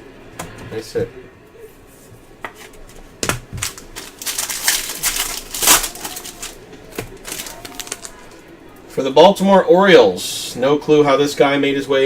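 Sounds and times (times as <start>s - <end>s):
plastic packaging crinkling: 2.8s - 8.5s.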